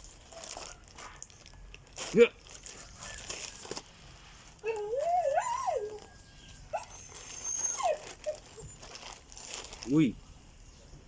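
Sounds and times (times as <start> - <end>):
dog whining: 4.6 - 9.0.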